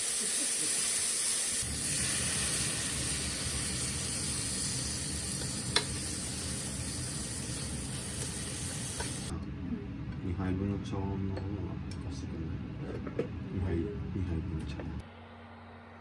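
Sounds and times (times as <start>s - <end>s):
food sizzling in a frying pan: 0.0s - 9.3s.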